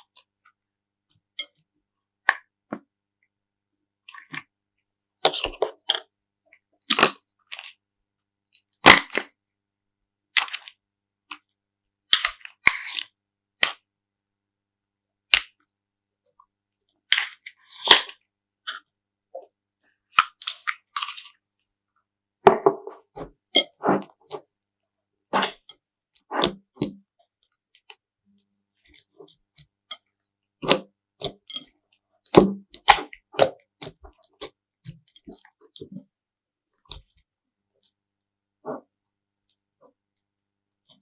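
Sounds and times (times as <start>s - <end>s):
slime squishing: 25.3s - 25.7s, 26.3s - 27.0s, 32.3s - 34.5s.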